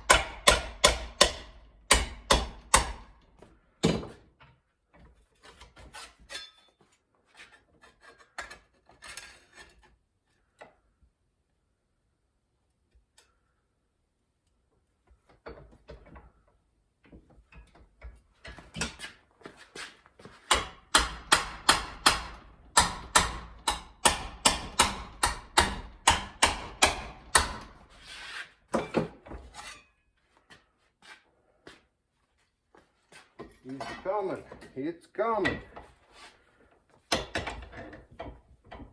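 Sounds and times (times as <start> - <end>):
hammer striking sheet steel: 0.0 - 3.1, 20.5 - 27.8
metal scrape: 27.9 - 28.6, 29.4 - 30.0.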